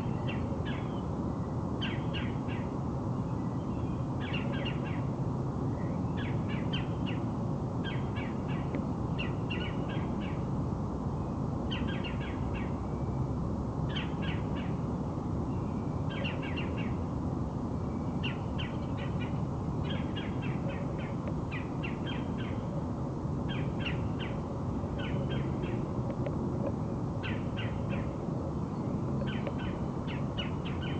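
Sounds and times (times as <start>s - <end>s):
low background rumble: 0.0s - 30.9s
birds calling with clicky notes: 29.2s - 30.9s.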